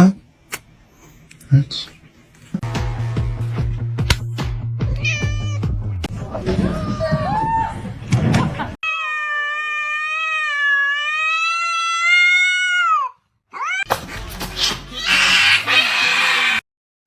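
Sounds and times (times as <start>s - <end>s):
cat meowing: 4.9s - 5.8s, 8.8s - 13.9s, 14.9s - 16.6s
cat rising call: 5.0s - 5.6s, 8.8s - 13.9s.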